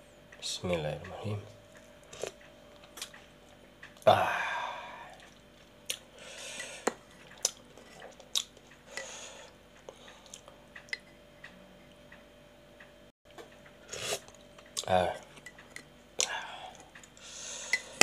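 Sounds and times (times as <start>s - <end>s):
breaths: 6.1s - 7.0s, 8.9s - 10.4s, 16.2s - 18.0s.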